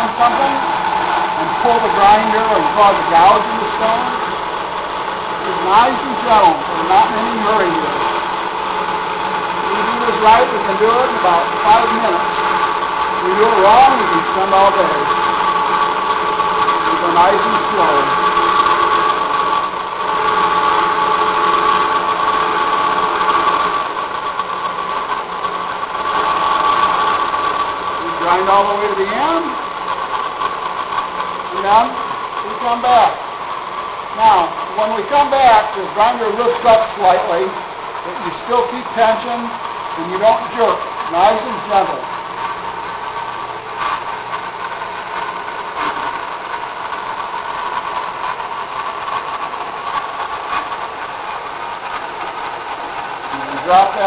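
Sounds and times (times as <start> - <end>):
electric grinder whining: 0.0 - 54.0.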